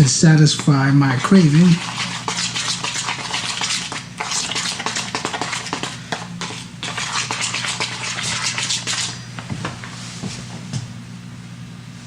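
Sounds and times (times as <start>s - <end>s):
utensil scraping bowl: 0.5s - 9.2s.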